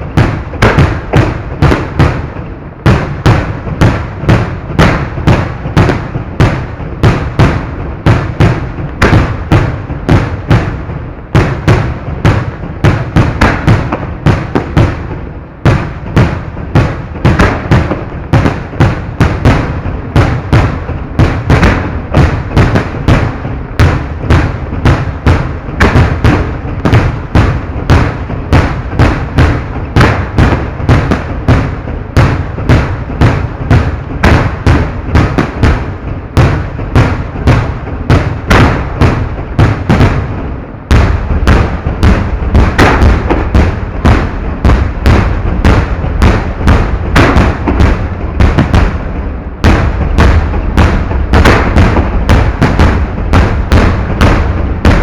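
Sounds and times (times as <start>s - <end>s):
fireworks detonations: 0.0s - 55.0s.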